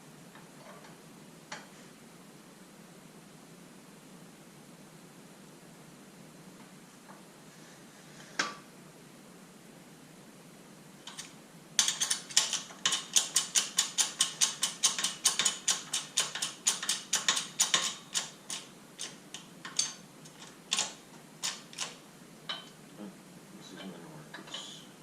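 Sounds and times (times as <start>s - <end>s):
hand ratchet clicking: 11.1s - 22.0s.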